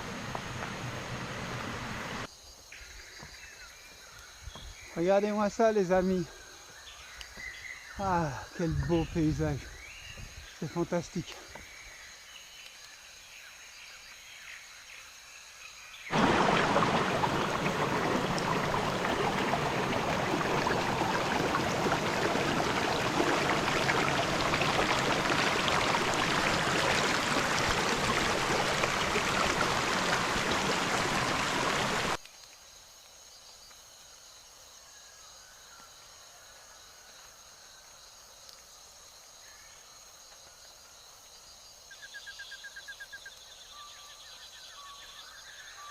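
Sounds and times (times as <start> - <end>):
rushing stream water: 0.0 - 2.3, 16.1 - 32.2.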